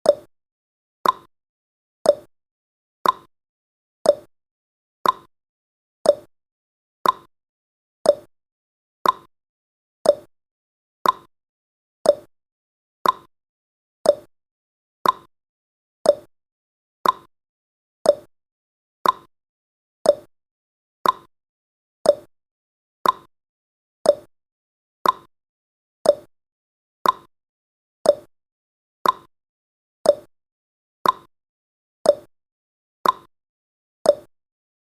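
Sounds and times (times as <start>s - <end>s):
clock ticking: 5.0s - 5.3s, 7.0s - 7.3s, 8.1s - 8.3s, 9.0s - 9.3s, 10.1s - 10.3s, 11.0s - 11.3s, 12.1s - 12.3s, 13.0s - 13.3s, 14.1s - 14.3s, 15.0s - 15.3s, 16.1s - 16.3s, 17.0s - 17.3s, 18.1s - 18.3s, 19.0s - 19.3s, 20.1s - 20.3s, 21.0s - 21.3s, 22.1s - 22.3s, 23.0s - 23.3s, 24.1s - 24.3s, 25.0s - 25.3s, 26.0s - 26.3s, 27.0s - 27.3s, 28.1s - 28.3s, 29.0s - 29.3s, 30.1s - 30.3s, 31.0s - 31.3s, 32.1s - 32.3s, 33.0s - 33.3s, 34.1s - 34.3s.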